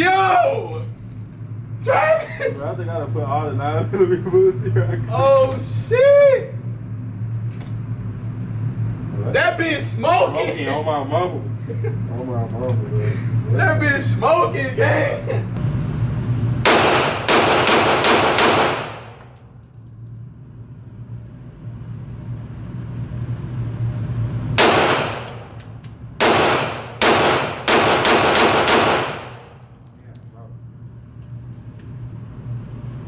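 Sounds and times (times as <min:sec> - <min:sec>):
steady low hum: 0:00.0 - 0:33.0
gunshots with ringing echo: 0:16.6 - 0:19.3, 0:24.6 - 0:25.6, 0:26.2 - 0:29.6.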